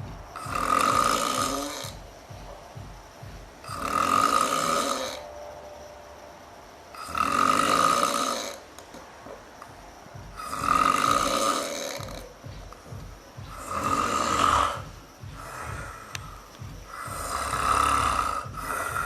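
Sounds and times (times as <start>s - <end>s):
quiet breathing: 0.0s - 19.0s
cartoon character snoring: 13.6s - 14.8s.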